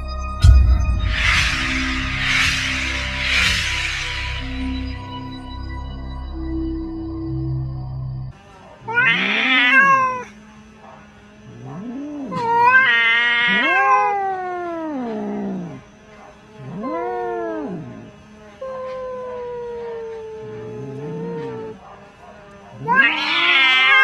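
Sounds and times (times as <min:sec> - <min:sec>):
cats yowling: 0:08.8 - 0:24.0.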